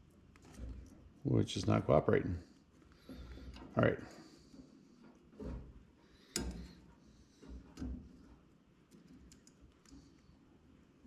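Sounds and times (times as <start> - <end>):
clicks and knocks of parts handled: 5.0 - 10.2.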